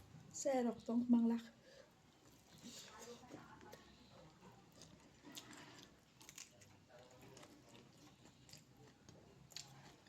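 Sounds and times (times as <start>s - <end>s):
person chewing: 9.5s - 10.0s.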